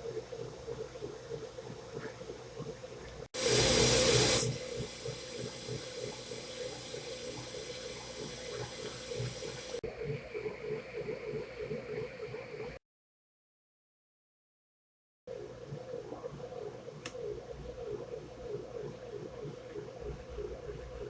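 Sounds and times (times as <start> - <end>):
compressed air hissing: 3.4 - 9.8.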